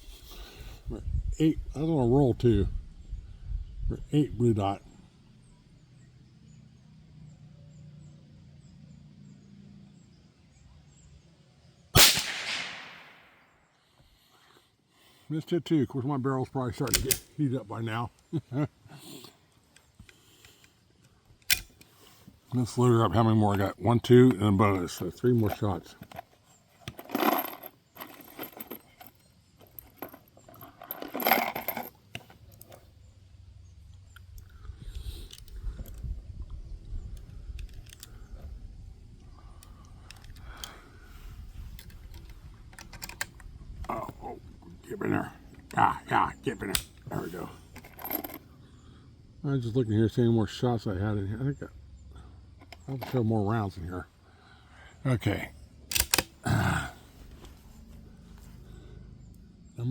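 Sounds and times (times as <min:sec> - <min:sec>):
rifle shot: 0:12.0 - 0:13.6
metallic clicks of cartridges: 0:16.7 - 0:18.3, 0:19.2 - 0:33.0, 0:33.9 - 0:44.2, 0:45.1 - 0:48.5, 0:55.9 - 0:56.4
rifle rattling clatter: 0:16.8 - 0:17.4, 0:21.3 - 0:22.2, 0:23.5 - 0:32.8, 0:41.7 - 0:43.6, 0:46.6 - 0:48.4, 0:55.9 - 0:56.3.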